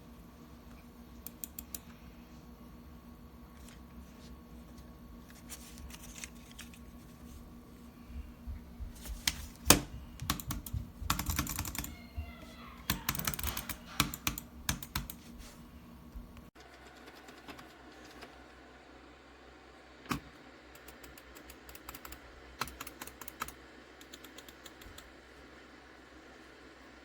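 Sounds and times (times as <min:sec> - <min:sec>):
mouse clicking: 0:01.2 - 0:01.9, 0:20.8 - 0:25.1
keyboard keystrokes: 0:09.2 - 0:12.0, 0:12.9 - 0:15.2, 0:20.1 - 0:25.1.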